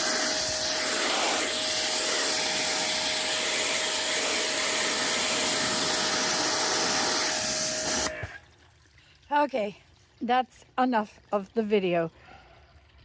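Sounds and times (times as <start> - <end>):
pressure washer spraying: 0.0 - 8.4.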